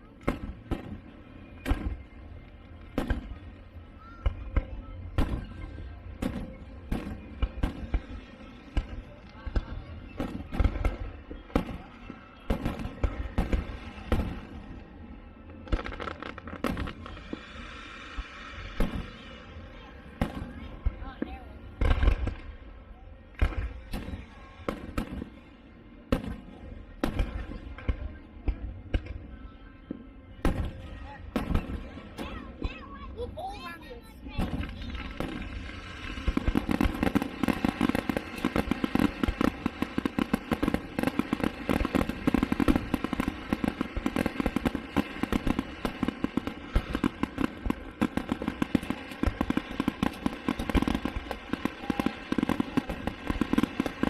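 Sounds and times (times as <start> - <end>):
fireworks booming: 15.6 - 22.6, 30.4 - 54.0.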